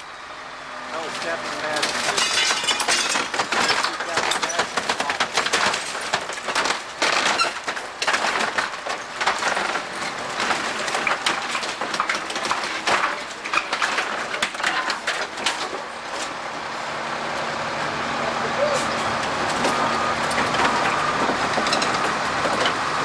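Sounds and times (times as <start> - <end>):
wood cracking: 1.0 - 16.7, 18.6 - 23.0
debris crashing: 1.0 - 23.0
glass breaking: 1.2 - 15.9.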